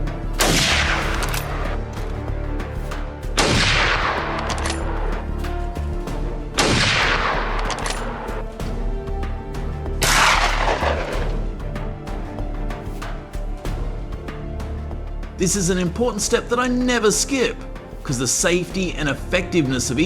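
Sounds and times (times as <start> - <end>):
background music: 0.0 - 20.0
loud gunshots: 0.4 - 1.8, 3.4 - 4.9, 6.6 - 8.2, 10.0 - 11.4.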